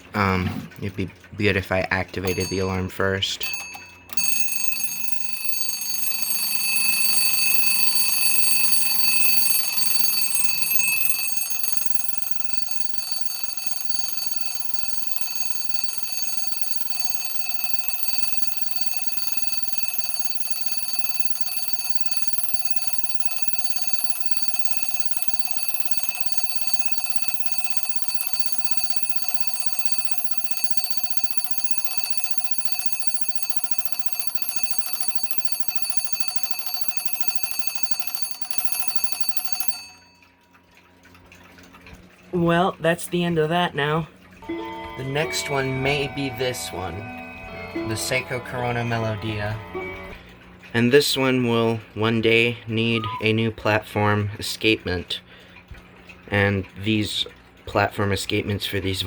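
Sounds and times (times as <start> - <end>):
alarm clock bell ringing: 2.2 - 40.6, 44.4 - 50.3.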